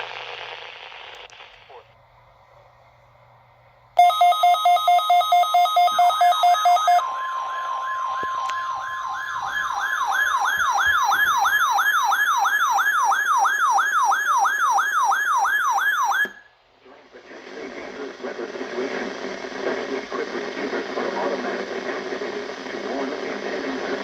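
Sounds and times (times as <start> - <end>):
rapid two-tone beeping: 4.0 - 11.0
steady warning alarm tone: 4.0 - 16.4
siren-like wail: 6.2 - 16.5.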